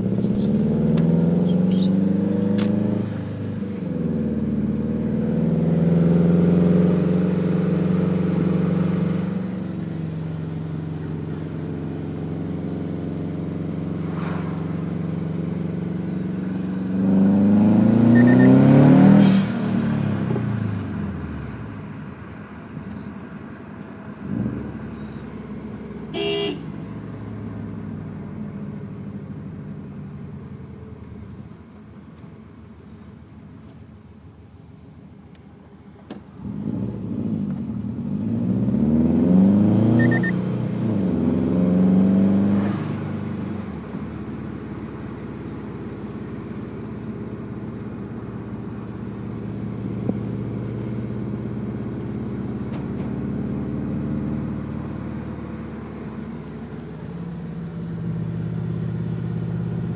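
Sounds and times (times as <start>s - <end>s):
car engine running with lifter tick: 0.0s - 1.9s, 35.2s - 36.4s, 43.9s - 53.6s, 55.0s - 58.4s
engine revving: 0.0s - 10.8s, 12.2s - 20.6s, 36.4s - 43.6s
short high beep: 18.1s - 18.6s, 39.9s - 40.4s.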